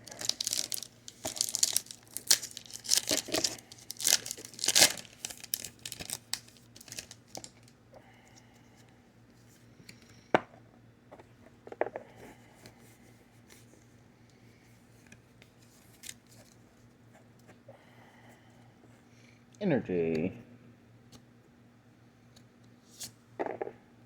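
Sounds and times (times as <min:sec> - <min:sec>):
foil wrapper tearing and crinkling: 0:00.0 - 0:07.7.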